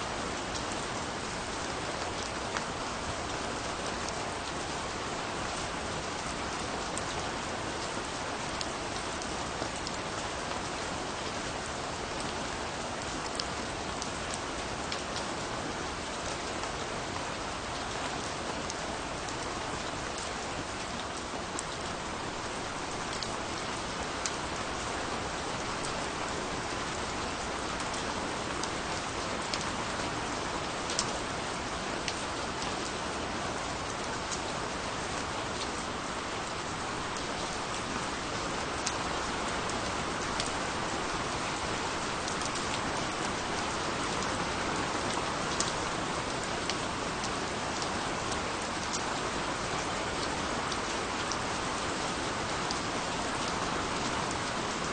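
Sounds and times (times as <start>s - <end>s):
steady rain falling: 0.0s - 54.9s.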